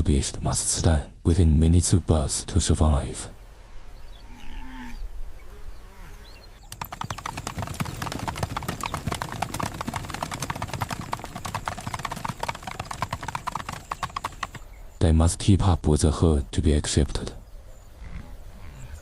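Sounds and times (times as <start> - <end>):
herd hoofbeats clattering: 6.7 - 14.6.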